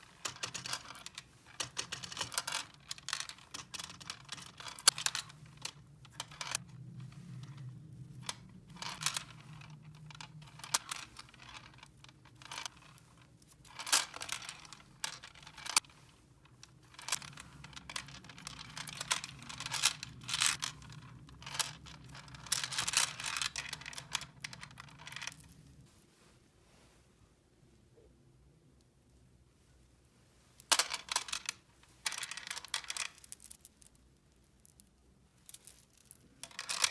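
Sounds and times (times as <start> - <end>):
plastic toy pieces clicking: 0.2 - 1.0, 1.6 - 5.3.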